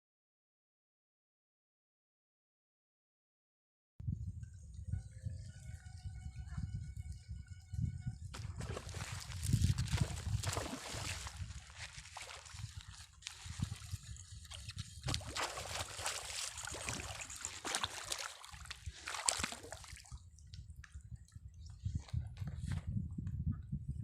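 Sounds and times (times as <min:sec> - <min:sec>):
water splashing and trickling: 0:08.4 - 0:21.5
water drips: 0:10.0 - 0:21.3.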